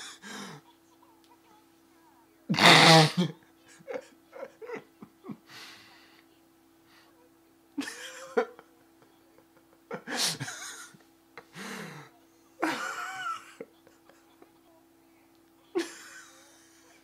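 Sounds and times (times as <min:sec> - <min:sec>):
faint steady hum: 0:00.0 - 0:17.0
person laughing: 0:03.2 - 0:05.4, 0:07.8 - 0:11.1, 0:15.8 - 0:17.0.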